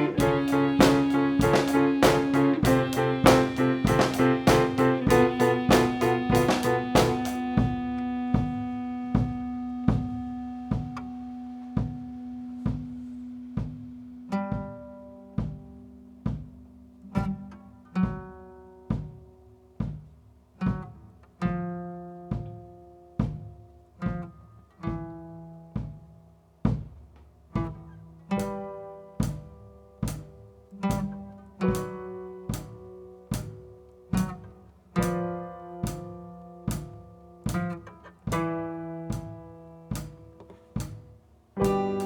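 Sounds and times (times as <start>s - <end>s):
low held note: 0.0s - 8.8s
plucked string notes: 0.0s - 18.7s, 41.6s - 42.0s.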